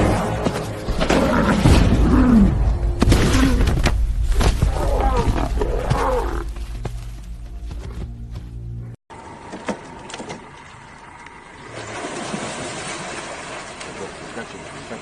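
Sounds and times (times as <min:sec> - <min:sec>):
animals growling and snarling: 0:00.0 - 0:03.9, 0:04.6 - 0:06.6.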